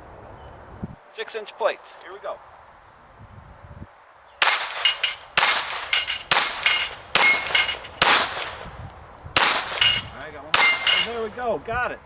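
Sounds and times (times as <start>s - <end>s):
bullets ringing steel plates: 4.4s - 8.6s, 9.4s - 11.5s
pistol shots: 4.4s - 8.8s, 9.4s - 11.4s.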